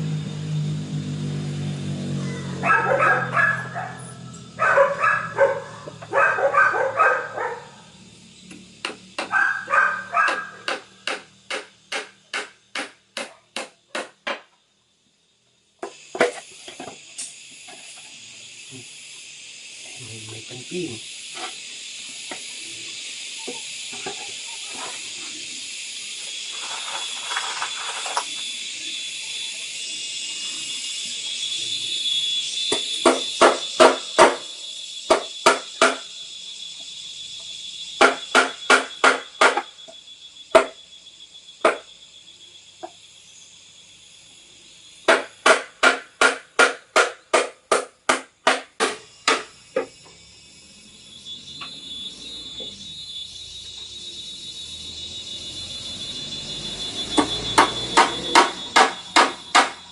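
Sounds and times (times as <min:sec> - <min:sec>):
high insect chorus: 0:00.0 - 0:59.9
ringing hammer blows: 0:38.0 - 0:40.8, 0:54.7 - 0:59.9.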